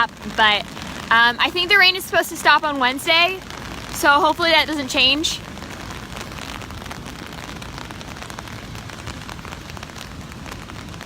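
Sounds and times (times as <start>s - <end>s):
heavy rain: 0.0s - 11.0s
raindrops ticking near microphone: 0.0s - 11.0s.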